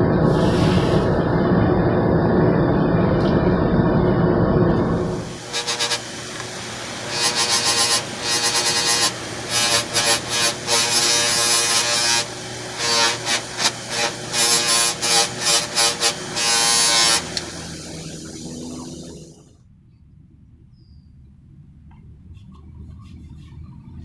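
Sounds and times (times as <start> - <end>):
electric power tool humming: 5.0 - 19.5
metal rasping against tool: 5.2 - 19.2.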